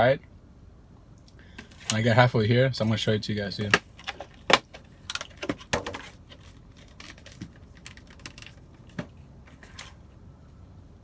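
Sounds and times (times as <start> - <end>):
food packaging clicks and crinkles: 3.6 - 10.0
faint packaging rustling: 3.6 - 10.1.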